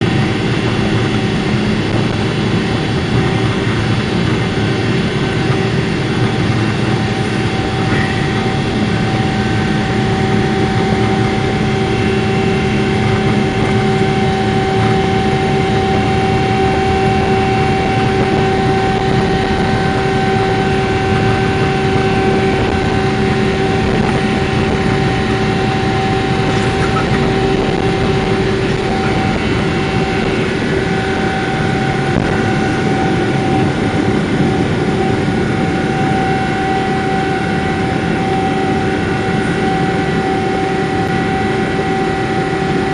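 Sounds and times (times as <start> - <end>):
aircraft engine and airflow roar: 0.0 - 42.9
steady hum tones: 0.0 - 42.9.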